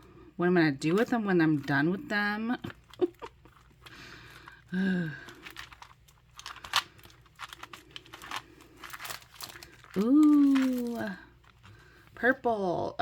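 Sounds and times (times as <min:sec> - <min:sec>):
plastic packaging crinkling: 0:00.8 - 0:12.1.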